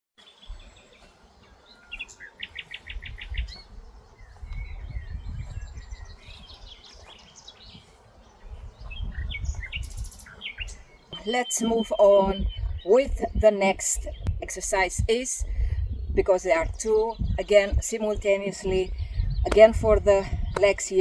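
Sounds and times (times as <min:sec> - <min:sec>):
bird trill: 0:00.2 - 0:14.2
birds singing and calling: 0:00.2 - 0:21.0
wind on microphone: 0:00.3 - 0:21.0.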